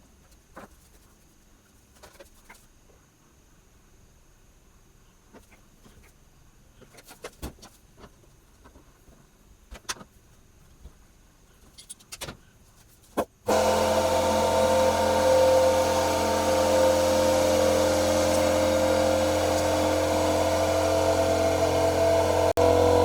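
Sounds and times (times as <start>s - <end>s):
air compressor humming: 13.5s - 23.0s.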